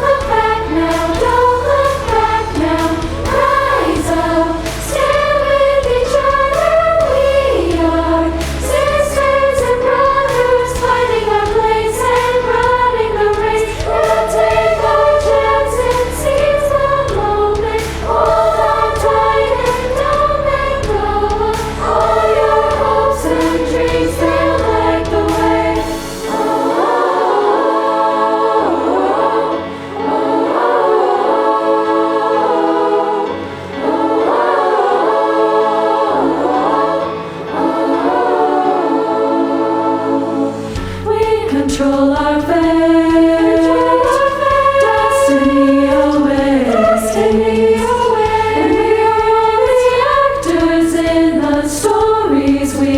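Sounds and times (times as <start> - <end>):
low accompaniment with light beat: 0.0 - 27.0, 40.6 - 52.9
girls' choir singing: 0.0 - 52.9.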